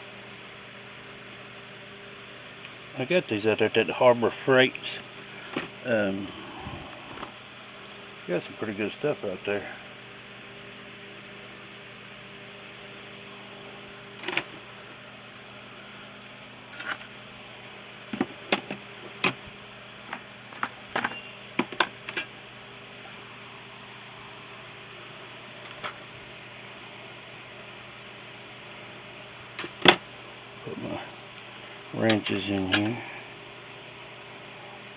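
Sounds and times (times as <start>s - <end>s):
steady hum: 1.8s - 34.9s
hand tools clicking and clacking: 16.7s - 17.0s, 20.6s - 22.3s, 29.6s - 30.0s, 32.1s - 33.0s.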